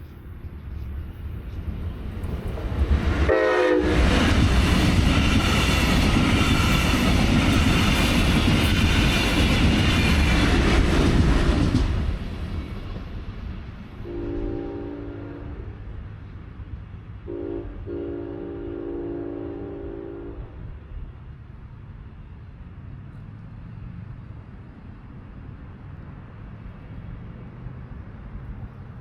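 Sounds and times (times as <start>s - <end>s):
train wheels rushing on rails: 0.0s - 29.0s
train horn blast: 3.3s - 4.2s, 14.0s - 15.9s, 17.2s - 20.8s.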